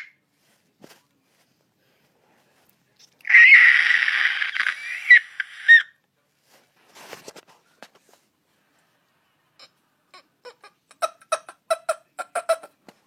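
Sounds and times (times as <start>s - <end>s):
person screeching from throat: 3.2s - 5.9s.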